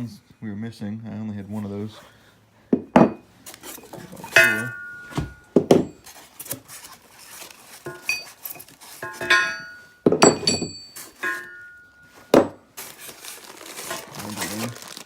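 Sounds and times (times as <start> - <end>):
metal parts clanking: 3.7 - 5.2, 7.8 - 11.8.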